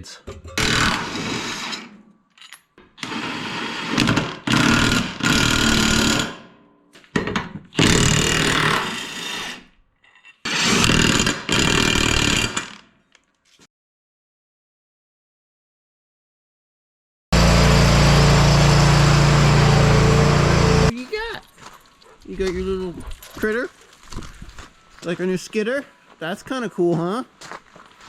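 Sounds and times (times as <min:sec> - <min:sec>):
impact wrench bursts: 0:03.0 - 0:06.4.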